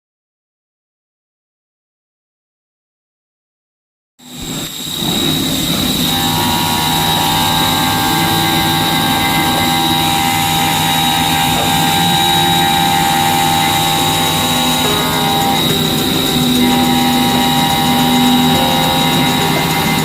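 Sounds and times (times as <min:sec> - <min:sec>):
machining centre whine: 0:04.2 - 0:20.0
higher whining tones: 0:04.3 - 0:20.0.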